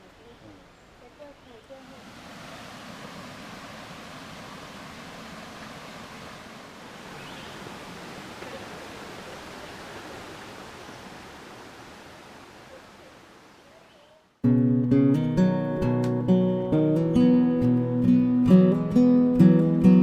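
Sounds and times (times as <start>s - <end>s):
outdoor rushing hiss: 1.6s - 13.6s
strummed acoustic guitar: 14.4s - 20.0s.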